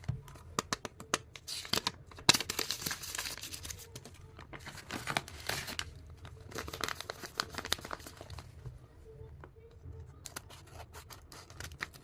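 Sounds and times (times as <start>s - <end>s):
wrapper ripping: 1.5s - 3.9s, 4.6s - 8.4s
wrapper crinkling: 1.5s - 8.5s.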